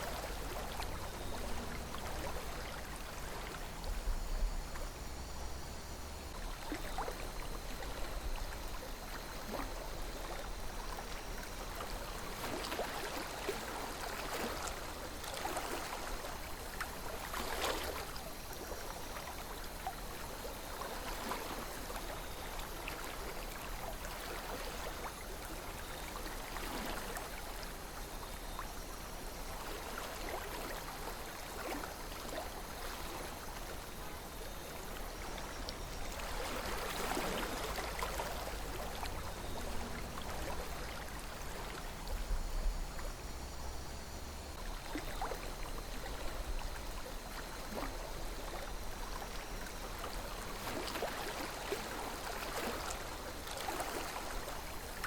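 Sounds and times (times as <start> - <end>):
river water babbling: 0.0 - 55.0
faint low rumble: 28.6 - 54.8.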